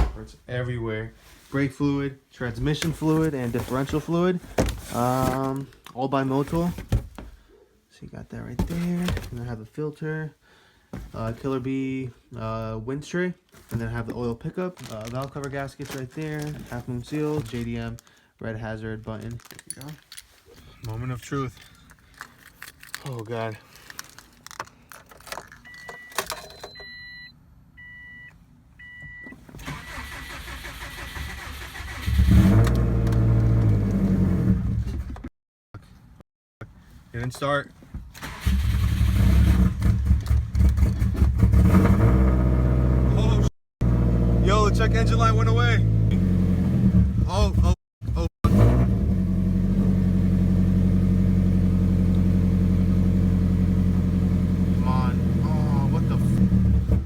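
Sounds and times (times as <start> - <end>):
car warning chime beeping: 25.7 - 30.0
car engine cranking on starter: 29.6 - 33.8, 38.2 - 40.8.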